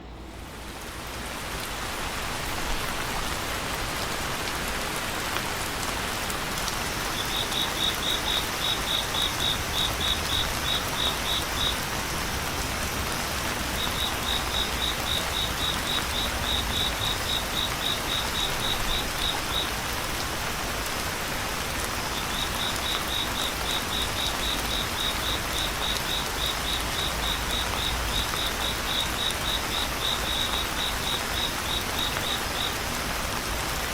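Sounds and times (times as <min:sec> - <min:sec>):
steady rain: 0:00.0 - 0:33.9.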